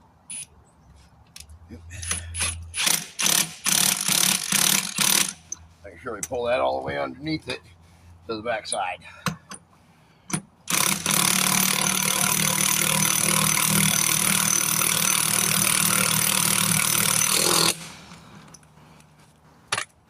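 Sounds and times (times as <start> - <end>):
impact wrench running: 2.0 - 5.6, 10.7 - 18.2.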